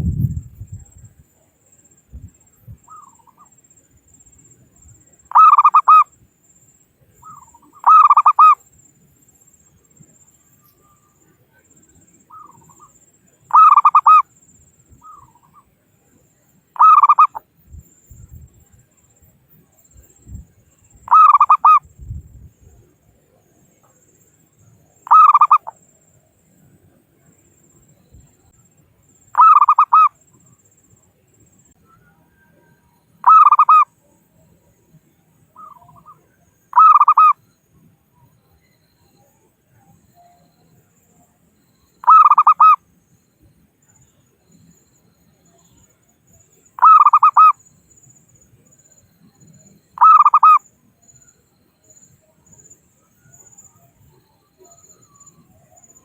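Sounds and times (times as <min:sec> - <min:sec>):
dove cooing: 0:05.3 - 0:06.0, 0:07.2 - 0:08.6, 0:13.5 - 0:14.2, 0:16.8 - 0:17.4, 0:25.1 - 0:25.7, 0:29.4 - 0:30.1, 0:33.2 - 0:33.8, 0:36.8 - 0:37.3, 0:42.0 - 0:42.8, 0:46.8 - 0:47.5, 0:50.0 - 0:50.6.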